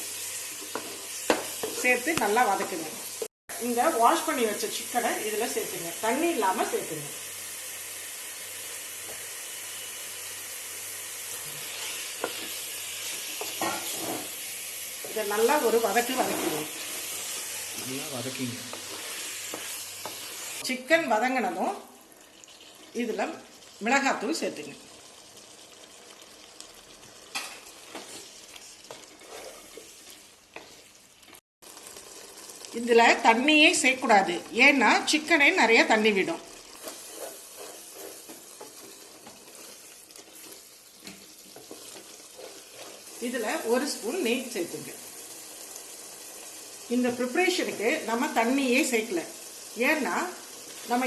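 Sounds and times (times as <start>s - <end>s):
chicken sizzling in a pan: 0.0s - 51.0s
spoon knocking and scraping pan: 0.5s - 3.3s, 11.5s - 14.4s, 15.0s - 17.9s, 18.6s - 20.6s, 27.3s - 30.9s, 36.8s - 43.1s.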